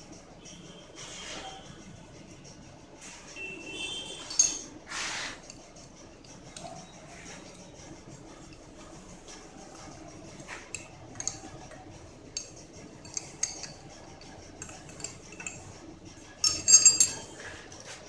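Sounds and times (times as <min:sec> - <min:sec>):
metal tools clinking: 0:04.1 - 0:04.7, 0:10.7 - 0:11.7, 0:12.3 - 0:17.6.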